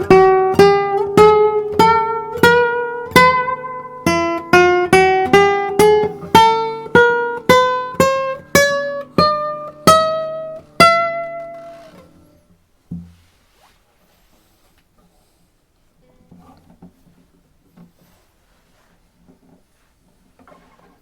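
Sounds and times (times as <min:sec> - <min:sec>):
guitar plucked melody: 0:00.0 - 0:13.2.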